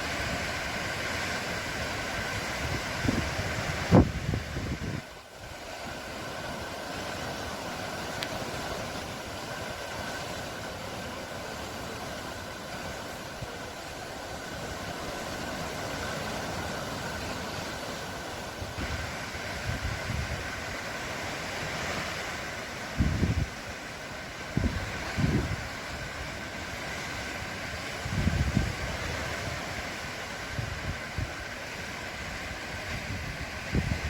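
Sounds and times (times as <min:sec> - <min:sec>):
wind noise: 0:00.0 - 0:06.5, 0:14.3 - 0:34.0
sea rushing: 0:00.0 - 0:34.0.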